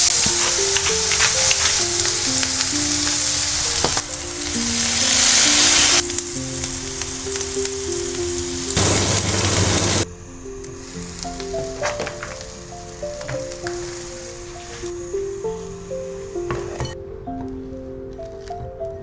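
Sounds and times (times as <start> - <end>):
tofu sizzling in a pan: 0.0 - 10.1, 10.8 - 16.8
gentle melody: 0.0 - 19.0.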